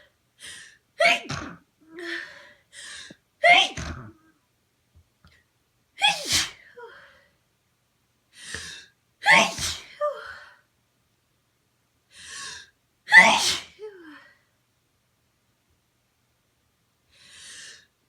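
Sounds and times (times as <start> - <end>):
person sneezing: 1.0 - 1.6, 6.0 - 6.6, 9.2 - 10.0, 13.1 - 13.9.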